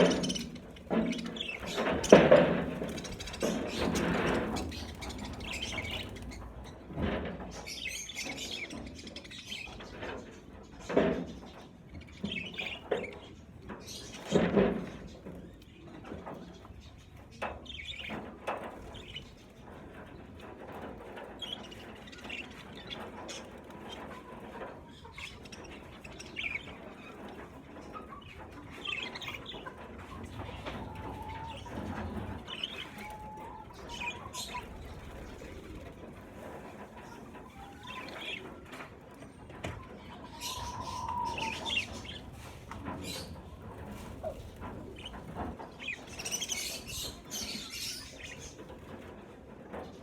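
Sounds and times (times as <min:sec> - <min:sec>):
budgerigars chirping: 0:00.0 - 0:06.5, 0:27.9 - 0:35.5, 0:45.0 - 0:48.6
wings flapping: 0:00.0 - 0:06.8.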